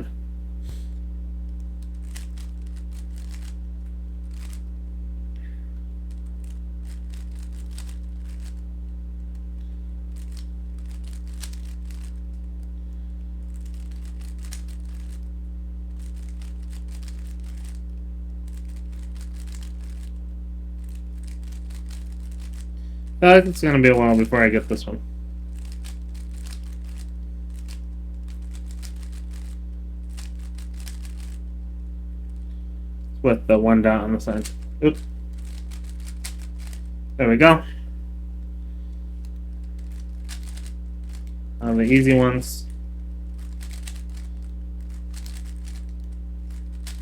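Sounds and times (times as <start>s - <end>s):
low electrical hum: 0.0s - 47.0s
plastic puzzle cube clicking: 1.8s - 3.5s, 6.9s - 8.6s, 10.2s - 12.2s, 13.6s - 15.2s, 16.0s - 17.8s, 18.5s - 20.1s, 25.6s - 31.4s, 35.4s - 36.8s, 39.8s - 41.3s, 43.4s - 44.3s, 45.1s - 45.9s.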